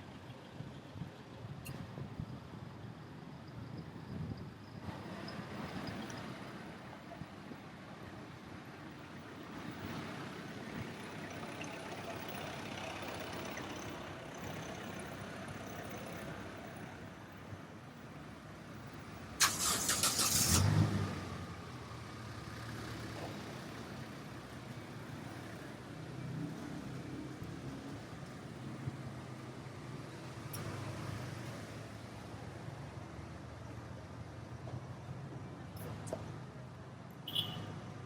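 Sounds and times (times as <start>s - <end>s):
street traffic noise: 0.0s - 38.0s
motor vehicle rasping burst: 19.4s - 21.3s.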